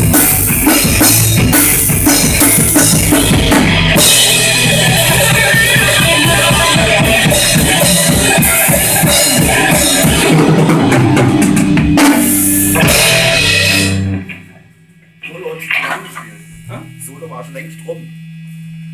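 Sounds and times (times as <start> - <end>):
bass drum beat: 0.0 - 14.4
loud rock music: 0.0 - 16.8.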